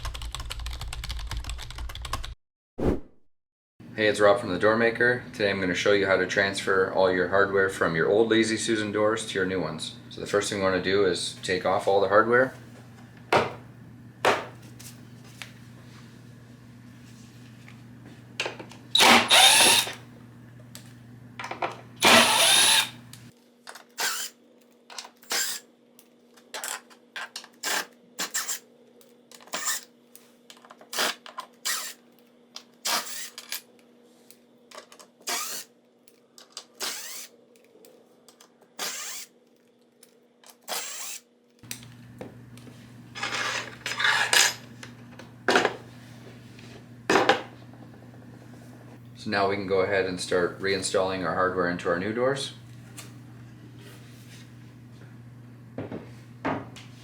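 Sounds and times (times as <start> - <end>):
drill-driver running: 18.9 - 20.0, 22.0 - 23.0, 27.6 - 28.6, 30.9 - 32.0, 32.9 - 33.4, 35.2 - 35.7, 36.8 - 37.3, 38.8 - 39.3, 40.7 - 41.2
screws and metal hardware clicking: 19.0 - 20.0, 22.0 - 22.9, 23.9 - 25.6, 26.6 - 28.6, 29.4 - 29.9, 30.8 - 32.0, 32.8 - 33.6, 34.8 - 37.7, 38.3 - 39.3, 40.0 - 41.2.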